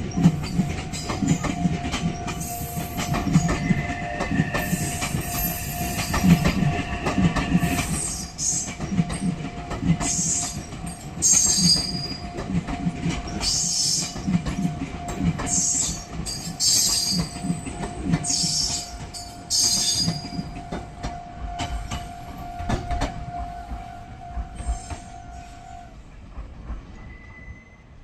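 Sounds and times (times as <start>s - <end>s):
train wheels clacking over rail joints: 0.0s - 25.2s
high wheel squeals: 2.1s - 8.7s, 27.0s - 28.0s.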